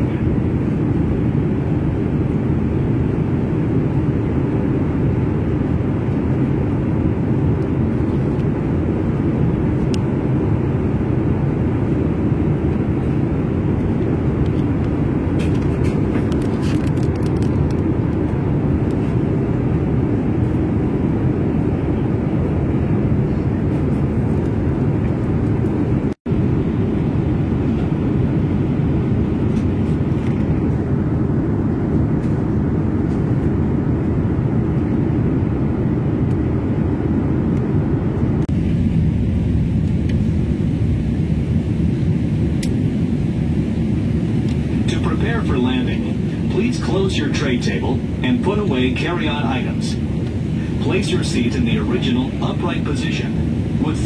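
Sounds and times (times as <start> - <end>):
airliner cabin noise: 0.0 - 54.0.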